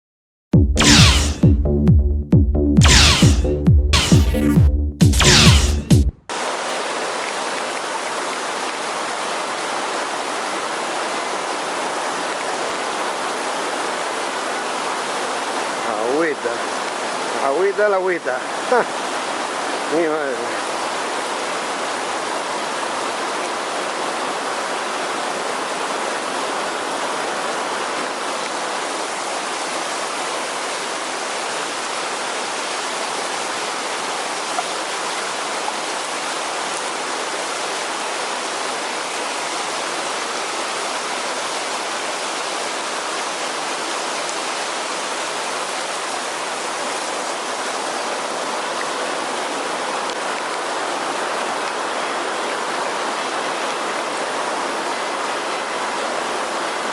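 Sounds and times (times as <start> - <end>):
running rainwater: 0.6 - 56.9
heavy rain: 2.8 - 56.9.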